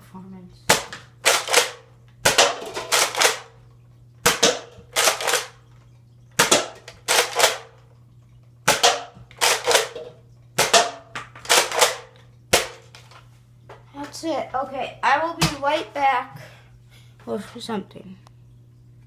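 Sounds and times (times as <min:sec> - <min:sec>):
toy blaster priming and firing: 0:00.8 - 0:03.5, 0:04.3 - 0:05.6, 0:06.4 - 0:07.7, 0:08.7 - 0:10.0, 0:10.6 - 0:12.8.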